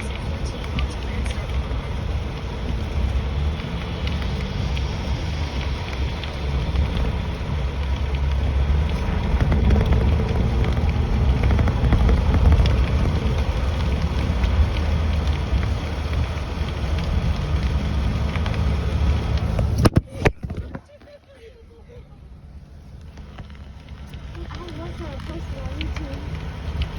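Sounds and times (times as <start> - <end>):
car road and engine rumble: 0.0 - 26.9.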